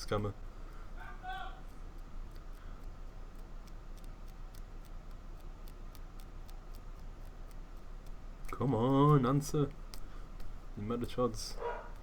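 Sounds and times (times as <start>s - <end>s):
low steady hum: 0.0s - 12.0s
faint quick light clicks: 1.6s - 10.6s.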